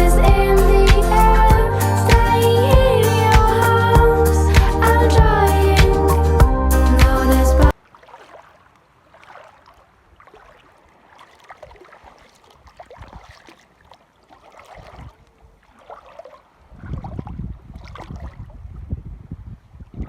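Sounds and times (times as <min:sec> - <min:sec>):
music track: 0:00.0 - 0:07.7
seawater lapping and splashing: 0:07.7 - 0:19.0.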